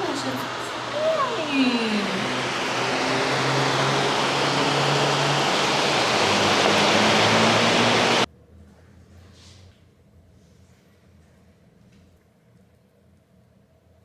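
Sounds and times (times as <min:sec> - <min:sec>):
loud rushing noise: 0:00.0 - 0:08.3.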